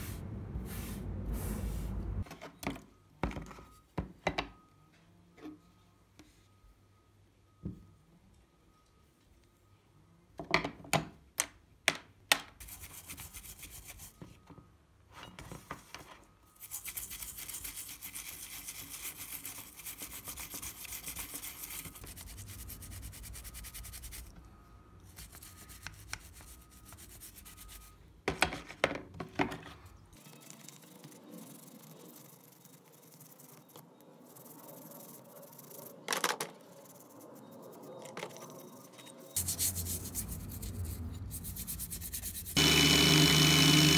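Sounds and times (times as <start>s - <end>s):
steady rubbing or scrubbing: 30.5s - 42.9s.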